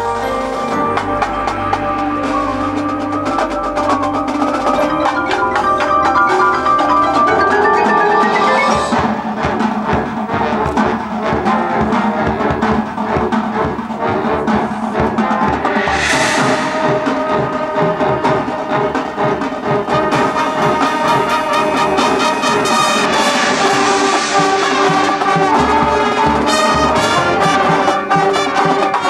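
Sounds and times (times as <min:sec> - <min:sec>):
mallet percussion melody: 0:00.0 - 0:11.1
rapid drum strokes: 0:02.8 - 0:28.7
cymbal swell: 0:15.6 - 0:18.6, 0:22.4 - 0:26.4.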